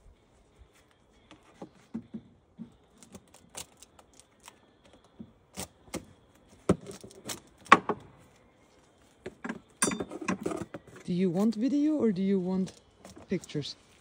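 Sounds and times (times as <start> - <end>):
wooden frames clicking and knocking: 6.7 - 8.1.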